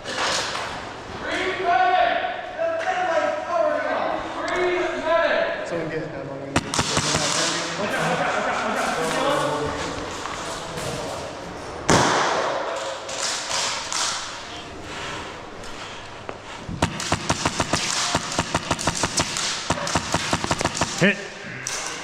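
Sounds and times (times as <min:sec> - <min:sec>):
airsoft gun shots: 0:06.6 - 0:07.8, 0:11.9 - 0:14.4, 0:16.8 - 0:21.2
loud thud: 0:16.7 - 0:20.8.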